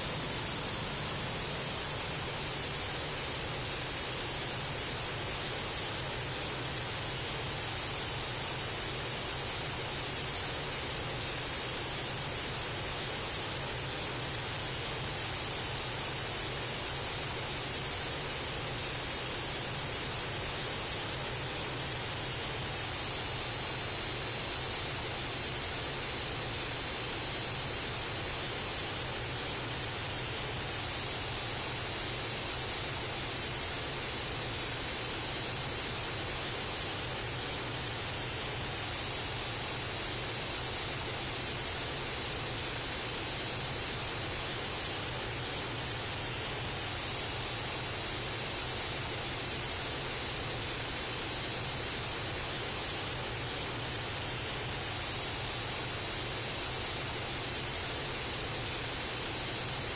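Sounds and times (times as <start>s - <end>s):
steady rushing noise: 0.0s - 3.4s.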